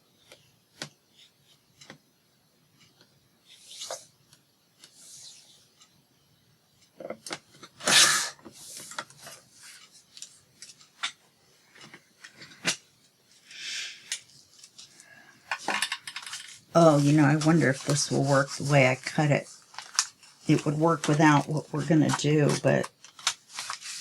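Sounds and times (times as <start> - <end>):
small clicks and taps: 1.8 - 2.0
paper rustling: 14.3 - 24.0.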